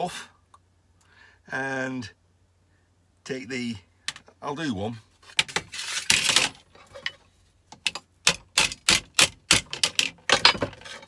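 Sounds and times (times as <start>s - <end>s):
scraping rustle: 4.9s - 7.6s, 10.4s - 11.0s
sharp knocks on metal parts: 7.8s - 11.0s.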